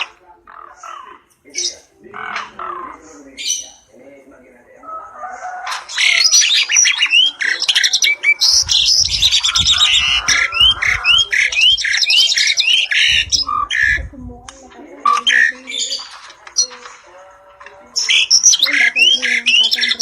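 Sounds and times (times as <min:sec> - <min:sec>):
harsh bird squawks: 0:00.0 - 0:03.9, 0:04.9 - 0:14.1, 0:18.0 - 0:20.0
starlings singing and chattering: 0:00.0 - 0:20.0.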